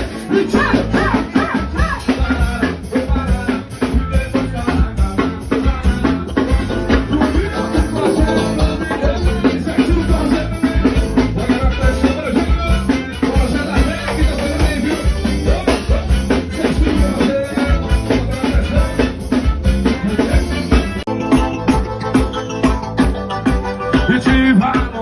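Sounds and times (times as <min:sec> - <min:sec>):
band playing instrumental: 0:00.0 - 0:25.0
drums and shaker beat: 0:00.0 - 0:25.0.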